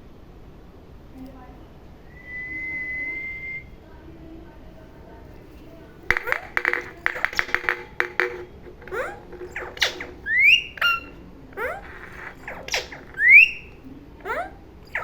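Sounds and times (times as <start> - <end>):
parrot rising whistles: 2.1 - 3.7, 8.9 - 15.0
parrot chirps and squawks: 6.1 - 15.0.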